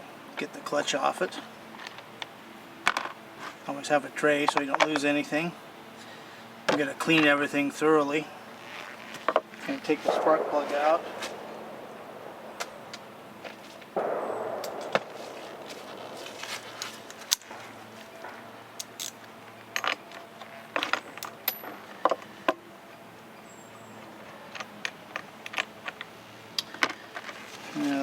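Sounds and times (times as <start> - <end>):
short rough burst of noise: 10.0 - 18.5.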